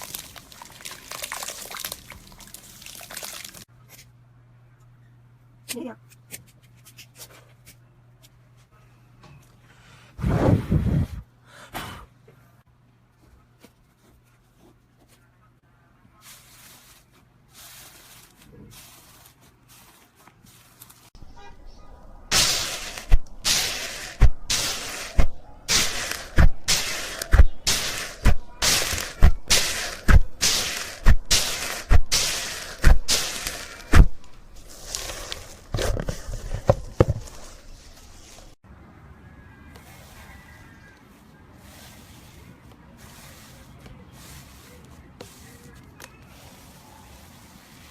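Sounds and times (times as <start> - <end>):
slime squishing and rustling: 0.0 - 3.7.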